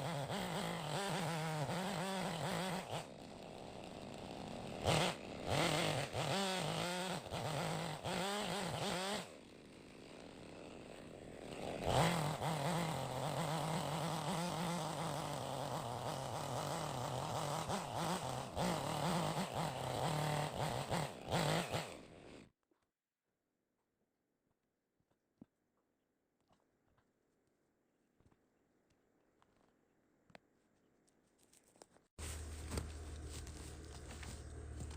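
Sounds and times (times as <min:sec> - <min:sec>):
chainsaw cutting a log: 0:00.0 - 0:22.5, 0:32.2 - 0:34.9.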